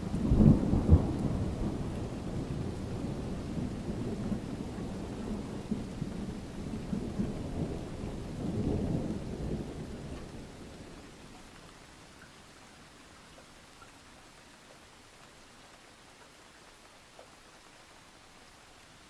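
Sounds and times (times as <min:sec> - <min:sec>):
thunder rumbling: 0:00.0 - 0:11.2
rain hiss: 0:00.0 - 0:19.0.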